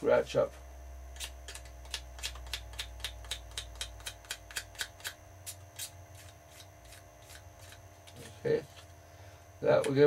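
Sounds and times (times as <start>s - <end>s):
knife blade scratching a surface: 4.0s - 8.6s.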